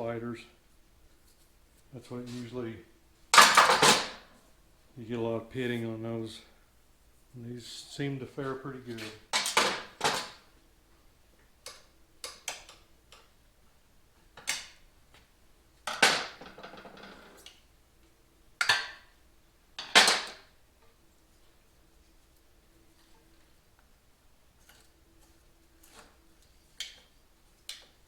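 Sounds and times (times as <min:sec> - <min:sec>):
metal parts and tools clanking: 0:03.4 - 0:04.2.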